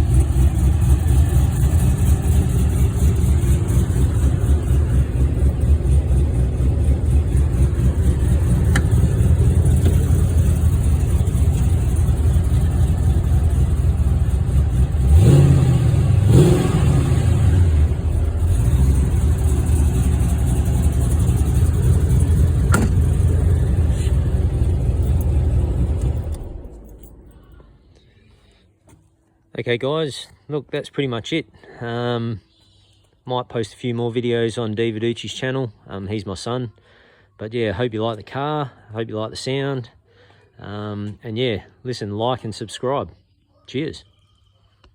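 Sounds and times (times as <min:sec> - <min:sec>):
car engine idling and revving: 0:00.0 - 0:27.8.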